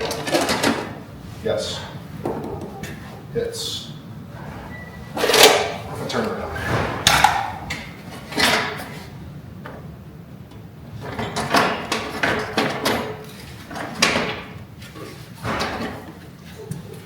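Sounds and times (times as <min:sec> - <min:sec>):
objects clunking into a toolbox: 0:00.0 - 0:01.0, 0:06.5 - 0:09.1, 0:11.0 - 0:17.0.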